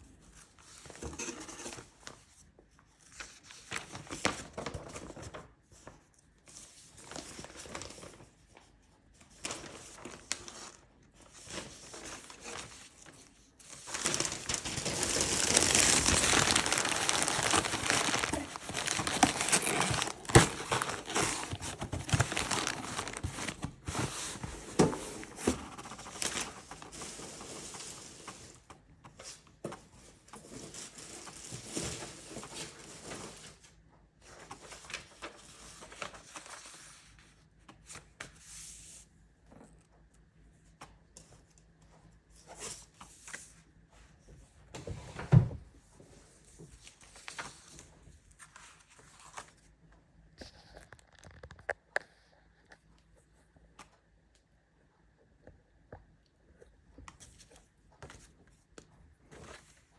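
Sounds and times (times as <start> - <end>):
packing material crinkling: 11.4 - 28.0.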